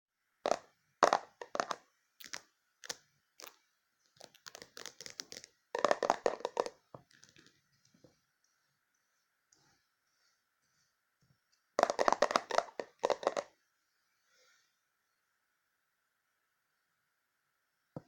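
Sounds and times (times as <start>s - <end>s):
crunchy slime crackling: 0.5s - 3.6s, 4.2s - 7.4s.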